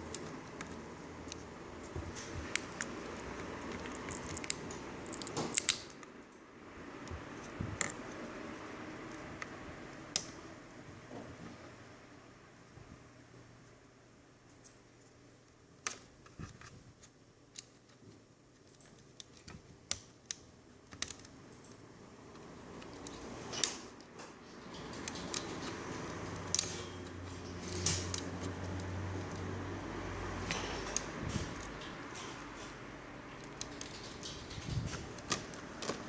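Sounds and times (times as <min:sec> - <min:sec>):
plastic parts clicking: 0:17.5 - 0:29.5, 0:33.4 - 0:36.0
rustling handling noise: 0:22.3 - 0:36.0.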